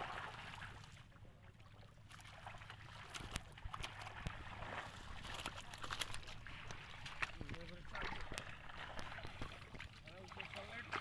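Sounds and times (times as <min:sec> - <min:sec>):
water sloshing in pond: 0:00.0 - 0:11.0
small splashes and clicks: 0:02.0 - 0:11.0.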